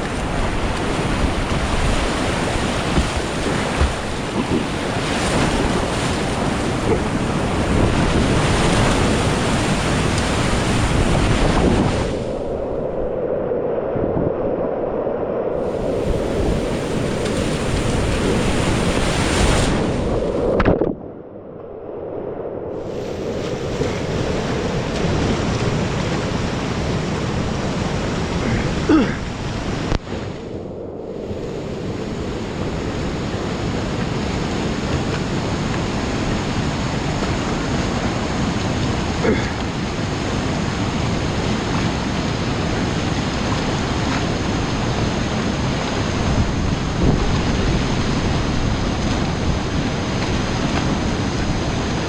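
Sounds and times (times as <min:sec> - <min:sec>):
river rapids rushing: 0:00.0 - 0:11.8.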